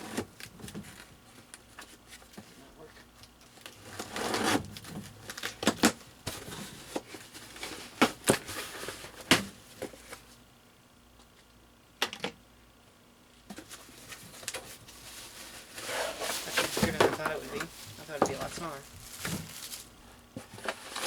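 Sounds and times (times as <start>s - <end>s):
cardboard scraping rustle: 13.5s - 21.0s.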